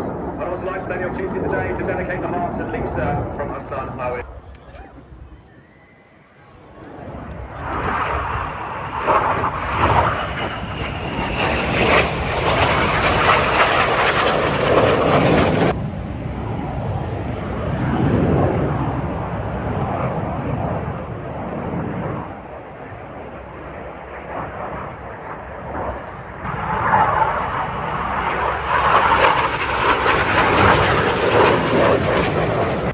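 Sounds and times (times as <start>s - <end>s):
jets passing overhead: 0.0s - 32.9s.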